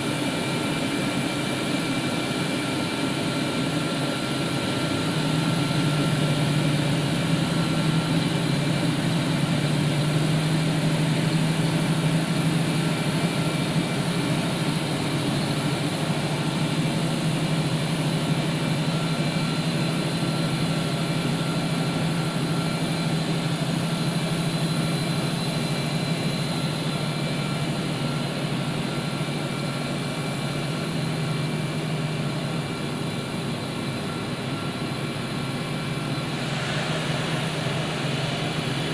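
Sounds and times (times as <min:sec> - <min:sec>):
high-pitched jet whines: 0:00.0 - 0:38.9
jet engine hum: 0:00.0 - 0:38.9.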